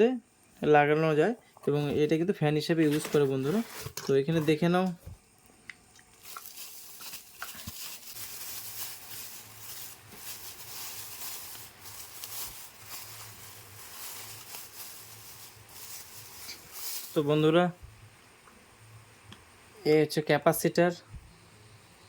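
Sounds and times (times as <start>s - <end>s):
packaging rustling: 2.8s - 5.0s, 6.2s - 17.3s.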